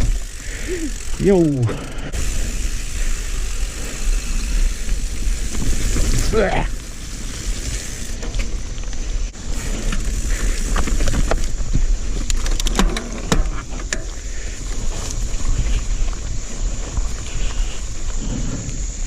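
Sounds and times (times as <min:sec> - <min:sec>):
tyres rolling rumble: 0:00.0 - 0:11.8
bike clicks and rattles: 0:00.0 - 0:19.0
wind buffeting microphone: 0:00.0 - 0:19.0.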